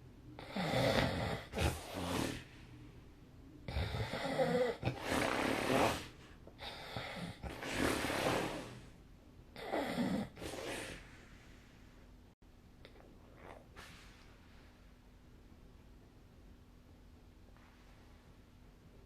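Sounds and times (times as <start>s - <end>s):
person snoring: 0.4s - 2.6s, 3.7s - 8.9s, 9.6s - 11.3s.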